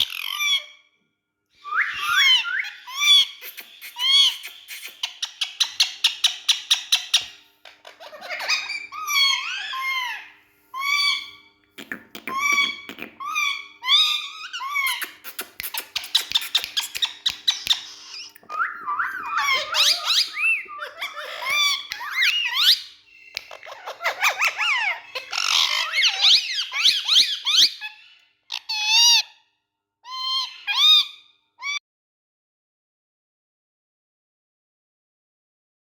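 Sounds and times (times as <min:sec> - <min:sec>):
parrots chattering and squawking: 0:00.0 - 0:00.8, 0:01.8 - 0:29.2, 0:30.1 - 0:31.8
parrot clicks: 0:15.0 - 0:18.5.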